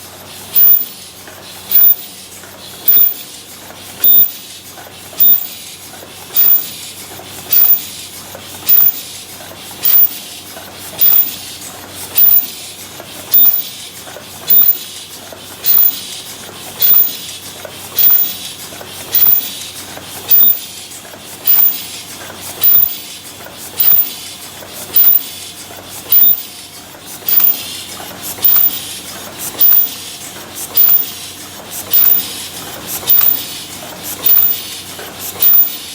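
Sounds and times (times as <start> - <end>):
machine mechanical clatter: 0.2 - 35.9
sharp high-pitched machine burst: 2.9 - 3.2, 4.0 - 4.4, 5.2 - 5.5, 6.4 - 6.7, 8.7 - 9.0, 11.0 - 11.4, 13.4 - 13.6, 14.5 - 14.8, 20.3 - 20.6, 22.6 - 23.0, 23.8 - 24.1, 25.0 - 25.3, 28.5 - 28.8.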